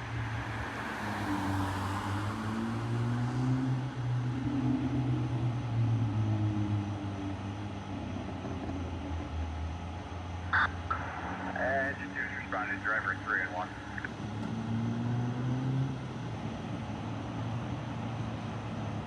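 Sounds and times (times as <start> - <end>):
diesel engine droning: 4.5 - 19.0
radio squelch burst: 10.6 - 14.1.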